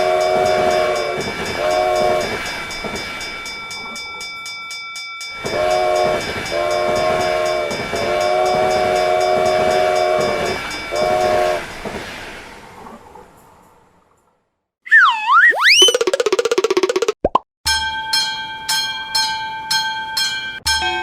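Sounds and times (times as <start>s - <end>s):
train horn: 0.0s - 2.6s, 5.4s - 11.8s
passing train rush and clatter: 0.0s - 4.4s, 5.4s - 14.4s.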